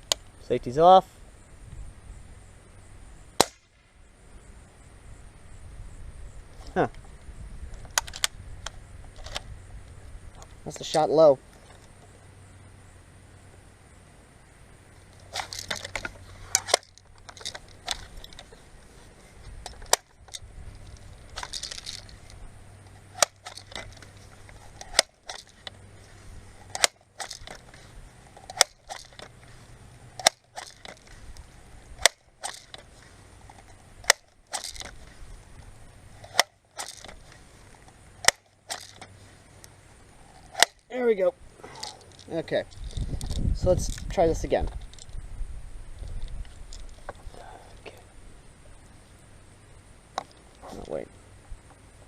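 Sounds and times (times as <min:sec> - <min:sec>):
pump lever rustling: 0:15.2 - 0:18.6, 0:19.4 - 0:25.8, 0:26.6 - 0:29.6, 0:30.2 - 0:35.1, 0:36.2 - 0:39.2, 0:40.4 - 0:40.8
air gun pump clicking: 0:23.2 - 0:25.8, 0:26.6 - 0:27.8, 0:30.2 - 0:32.9, 0:33.5 - 0:35.0, 0:36.2 - 0:37.2, 0:38.2 - 0:39.1.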